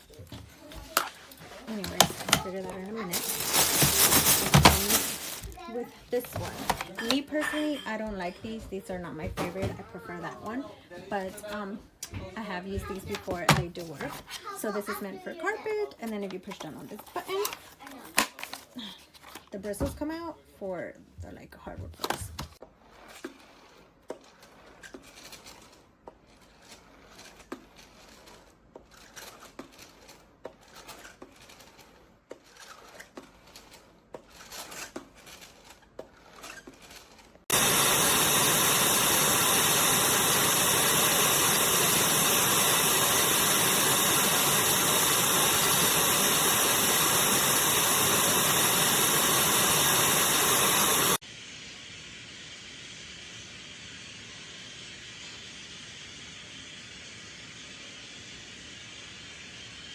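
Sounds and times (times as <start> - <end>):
vacuum cleaner running: 0.0 - 17.6, 37.5 - 59.8.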